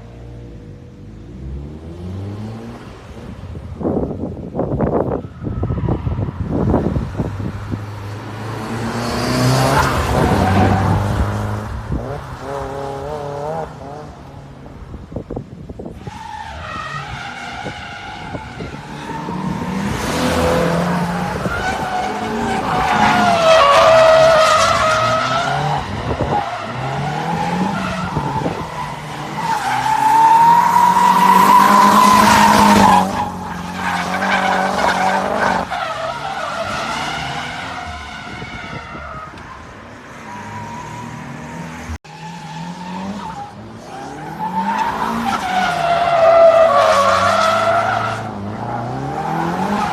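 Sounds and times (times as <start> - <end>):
tyres squealing and skidding: 4.9 - 7.0, 9.0 - 11.5, 15.8 - 49.9.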